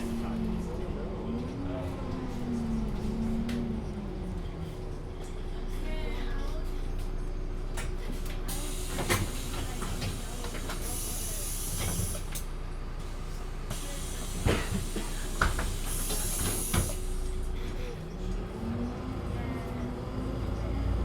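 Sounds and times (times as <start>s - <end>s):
bus engine revving: 0.0s - 5.4s, 13.8s - 21.0s
bus interior drone: 0.0s - 21.0s
compressed air hissing: 13.7s - 17.2s.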